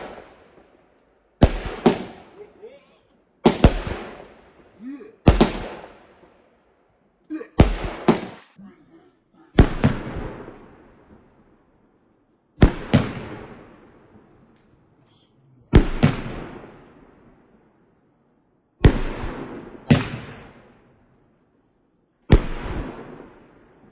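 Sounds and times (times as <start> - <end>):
fireworks banging with echo: 0.0 - 6.5, 7.6 - 8.6, 9.6 - 11.4, 12.6 - 14.6, 15.8 - 17.4.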